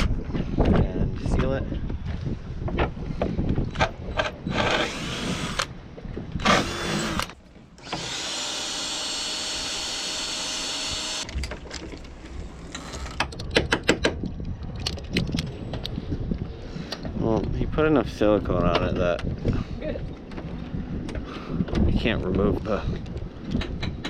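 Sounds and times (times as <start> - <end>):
power drill boring: 4.5 - 5.7, 6.4 - 11.3.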